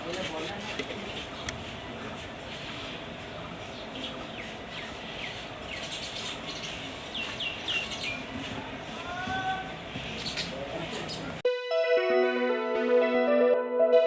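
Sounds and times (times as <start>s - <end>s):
steady outdoor hiss: 0.0s - 11.4s
sparrows chirping: 3.2s - 8.9s, 9.9s - 11.4s.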